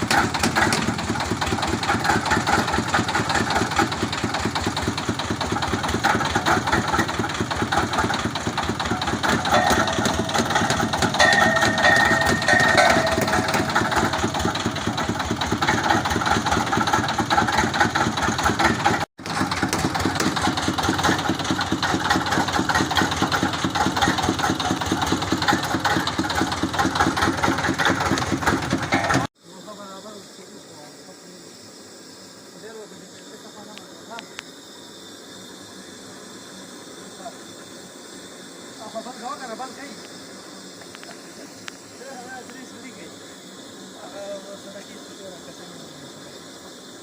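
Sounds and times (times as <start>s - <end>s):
drilling rig engine running: 0.0s - 29.4s
high tone: 9.5s - 10.5s, 11.2s - 13.7s.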